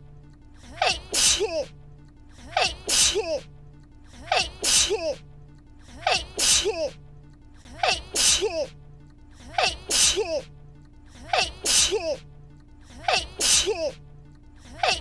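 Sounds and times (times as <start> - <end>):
person sneezing: 0.8 - 1.7, 2.5 - 3.5, 4.2 - 5.2, 6.0 - 7.0, 7.7 - 8.8, 9.6 - 10.5, 11.3 - 12.2, 12.9 - 14.0.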